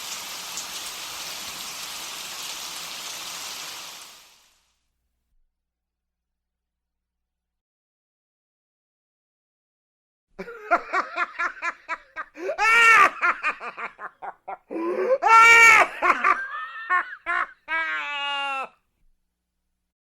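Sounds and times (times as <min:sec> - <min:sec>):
baby laughing: 0:10.4 - 0:18.7.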